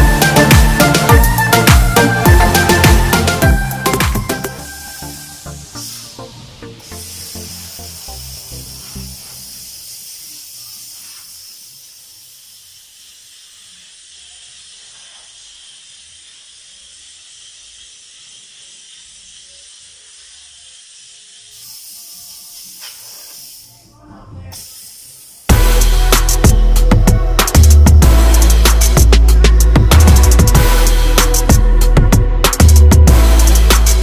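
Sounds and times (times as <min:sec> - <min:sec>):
loud drum-led music: 0:00.0 - 0:05.0, 0:25.5 - 0:34.0
faint music: 0:00.0 - 0:16.1, 0:18.1 - 0:31.1
steam cleaner hissing: 0:00.0 - 0:34.0.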